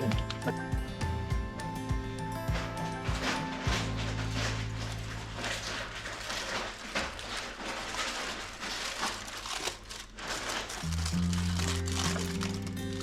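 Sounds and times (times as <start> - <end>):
rustling and crinkling handling noise: 0.0 - 13.0.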